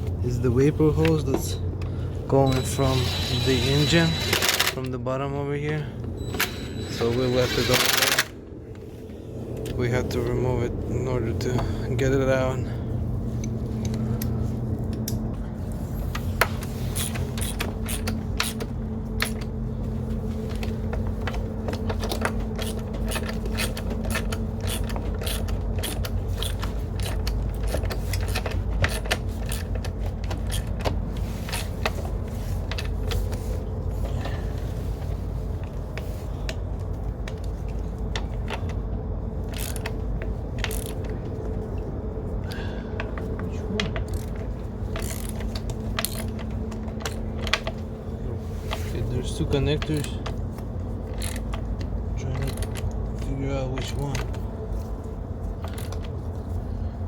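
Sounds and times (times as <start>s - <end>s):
low background hum: 0.0s - 57.0s
ratchet clicking: 39.5s - 39.9s, 40.6s - 41.0s, 44.9s - 46.4s, 51.1s - 51.5s.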